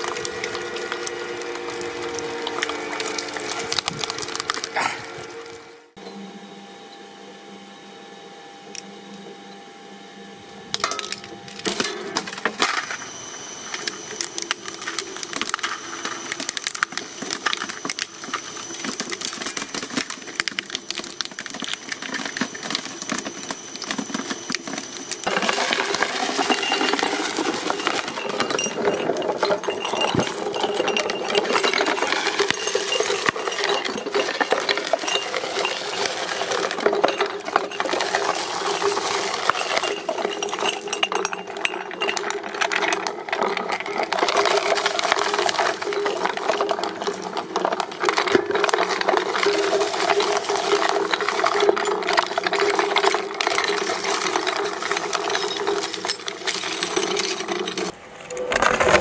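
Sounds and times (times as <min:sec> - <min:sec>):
material crackling in shredder: 0:00.0 - 0:05.7, 0:13.8 - 0:40.6
shredding machine humming: 0:00.0 - 0:59.0.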